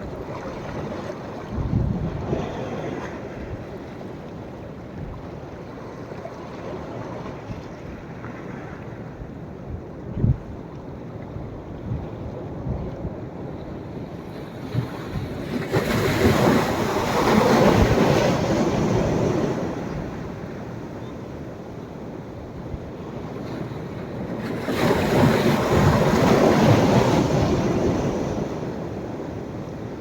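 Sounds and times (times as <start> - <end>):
sea waves breaking on beach: 0.0 - 4.7, 14.0 - 21.6, 22.4 - 30.0.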